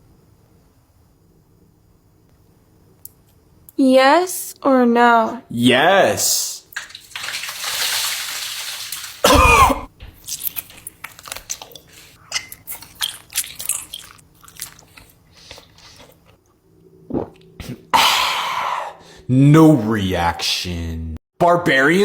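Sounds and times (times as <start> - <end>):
cough-like vocal burst: 9.2 - 9.9
person chewing crunchy food: 9.2 - 16.5.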